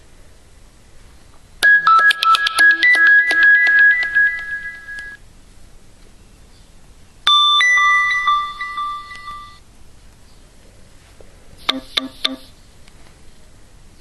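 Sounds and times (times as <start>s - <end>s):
bell-like phone ringtone: 1.6s - 5.2s, 7.3s - 9.6s.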